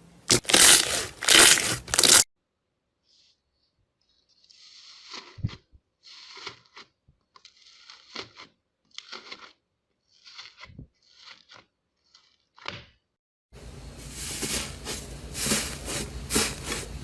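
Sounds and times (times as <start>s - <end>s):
slime crackling and crinkling: 0.3s - 2.3s.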